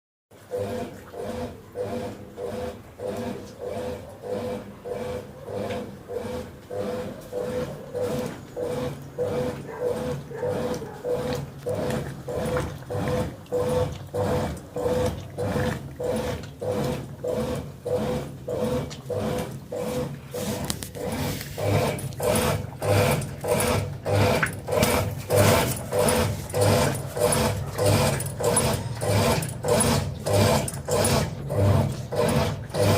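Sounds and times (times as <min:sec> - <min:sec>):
washing machine churning: 0:00.3 - 0:32.9
motor hum: 0:00.4 - 0:32.9.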